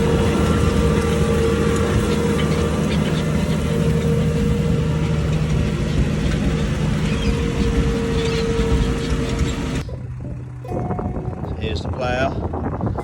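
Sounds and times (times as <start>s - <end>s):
steady whine: 0.0s - 13.0s
tractor diesel engine running: 0.0s - 13.0s.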